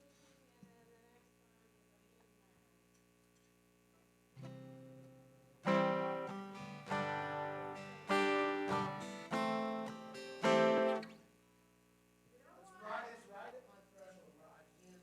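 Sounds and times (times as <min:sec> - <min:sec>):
acoustic guitar strumming chords: 0:04.4 - 0:11.2.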